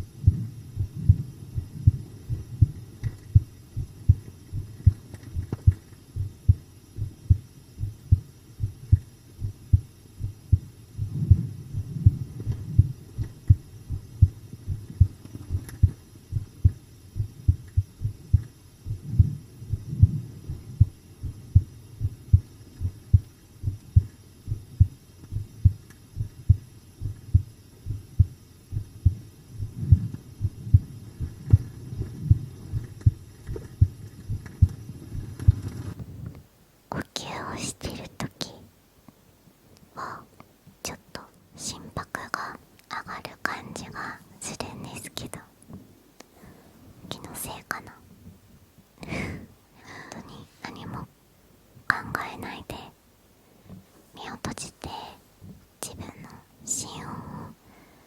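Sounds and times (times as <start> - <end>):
heartbeat thumps: 0.0 - 36.3.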